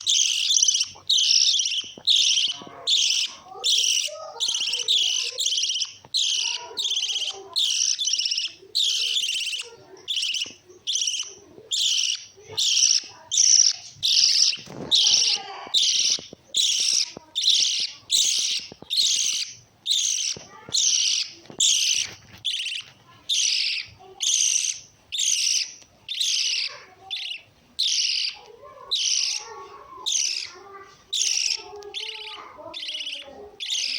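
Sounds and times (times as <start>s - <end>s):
parrots chirping shrilly: 0.0s - 33.9s.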